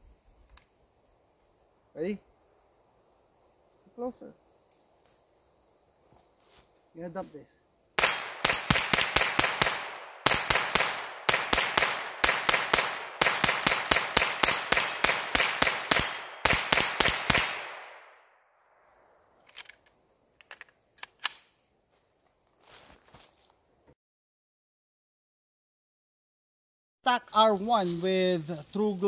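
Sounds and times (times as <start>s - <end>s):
rifle shots: 8.0s - 18.2s.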